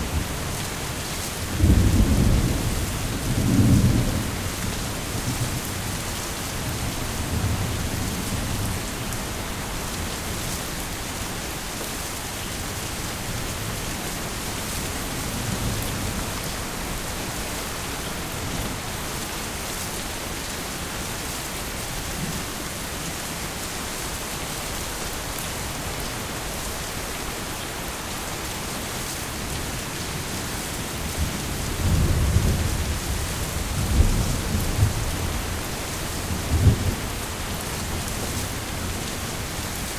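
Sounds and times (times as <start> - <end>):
heavy rain falling: 0.0 - 39.9
thunder rolling: 1.4 - 10.4, 29.4 - 39.8.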